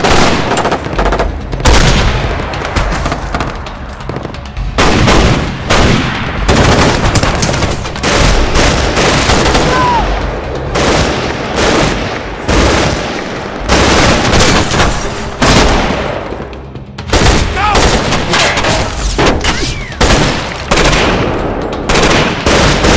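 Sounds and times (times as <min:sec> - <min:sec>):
automatic gunfire bursts: 0:04.8 - 0:09.8, 0:10.8 - 0:16.0, 0:17.2 - 0:22.9
single gunshots: 0:10.8 - 0:16.3, 0:17.1 - 0:22.9.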